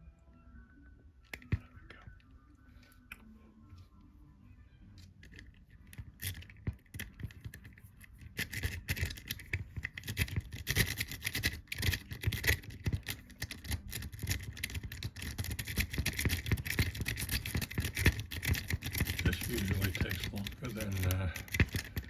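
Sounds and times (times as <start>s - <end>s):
lock pick scraping and clicking: 5.0s - 22.0s.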